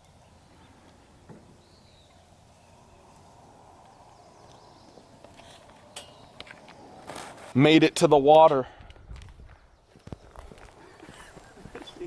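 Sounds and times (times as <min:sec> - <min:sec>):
faint bird chirp: 0:00.0 - 0:06.9
low wind rumble: 0:00.4 - 0:07.5, 0:08.6 - 0:12.0.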